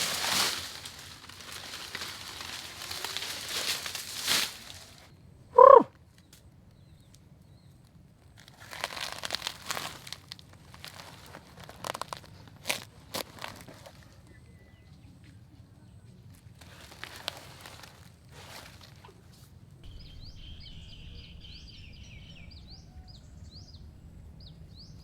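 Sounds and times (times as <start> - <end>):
rustling and crunching: 0.0 - 5.1, 6.0 - 14.9, 16.0 - 24.9
animal call: 5.5 - 5.9.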